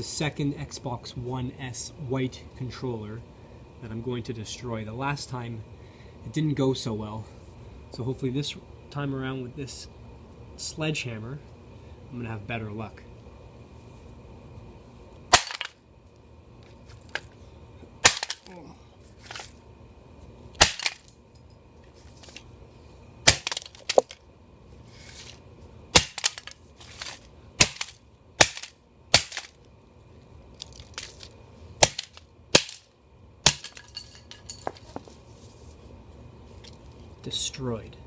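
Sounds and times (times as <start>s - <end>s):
sledgehammer cracking plastic: 15.3s - 15.8s, 18.0s - 18.5s, 20.6s - 21.1s, 23.2s - 24.2s, 26.0s - 29.6s, 30.7s - 32.9s.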